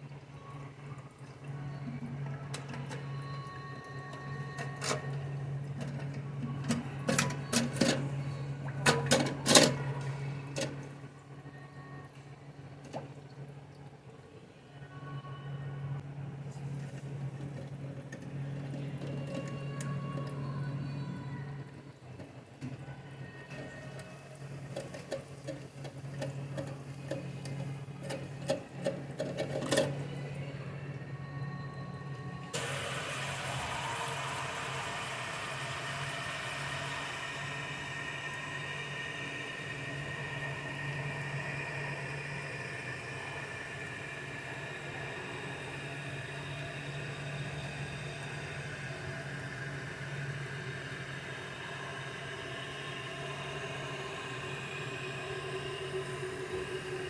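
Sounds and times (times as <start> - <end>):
toilet cistern filling: 0.0 - 11.2, 32.5 - 57.0
steady low hum: 0.0 - 57.0.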